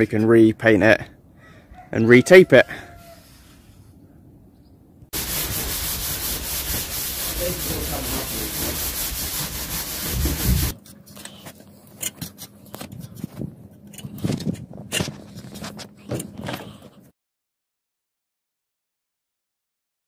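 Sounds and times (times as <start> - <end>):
scraping and sanding fibreglass: 5.2 - 10.8.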